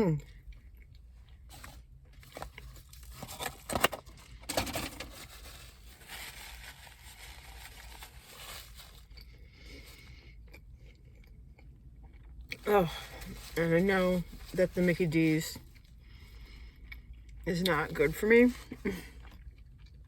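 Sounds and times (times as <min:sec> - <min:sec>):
low steady hum: 0:00.0 - 0:20.0
rustling and scraping: 0:01.5 - 0:09.2.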